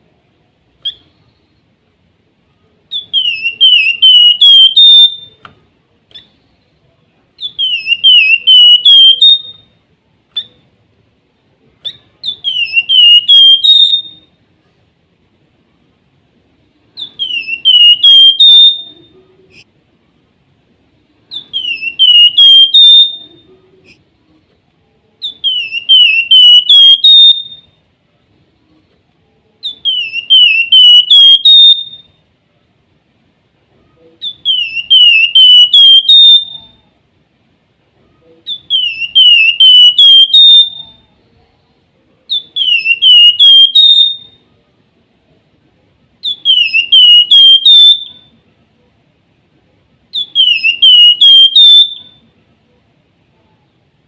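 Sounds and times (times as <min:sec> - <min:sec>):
bird singing whistled song: 0:00.8 - 0:01.6, 0:02.9 - 0:05.4, 0:07.4 - 0:09.8, 0:11.8 - 0:14.4, 0:17.0 - 0:19.2, 0:21.3 - 0:23.5, 0:25.2 - 0:27.8, 0:29.6 - 0:32.2, 0:34.2 - 0:36.8, 0:38.5 - 0:41.1, 0:42.3 - 0:44.4, 0:46.2 - 0:48.3, 0:50.1 - 0:52.2.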